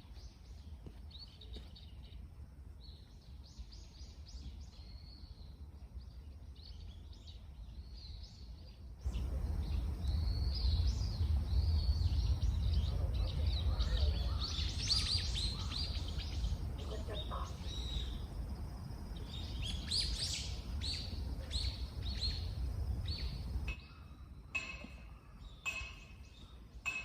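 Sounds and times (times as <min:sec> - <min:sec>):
small birds chirping: 0:00.0 - 0:27.0
low rumble: 0:09.0 - 0:16.9.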